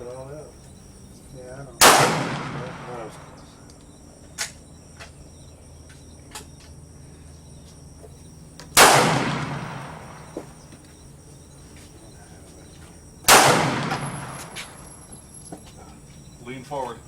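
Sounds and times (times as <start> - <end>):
rifle shot echoing: 1.8 - 3.4, 8.8 - 10.5, 13.3 - 15.1.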